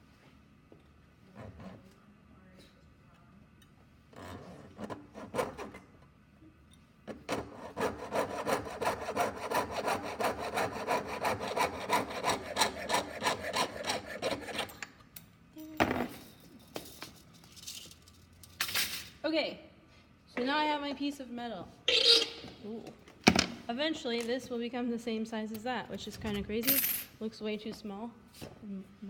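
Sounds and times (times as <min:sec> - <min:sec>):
jeweler's saw cutting metal: 0:07.4 - 0:14.8.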